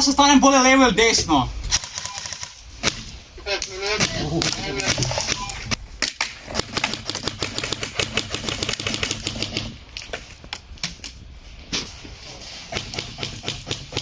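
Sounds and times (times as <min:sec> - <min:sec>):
airsoft guns firing: 0:03.9 - 0:09.8.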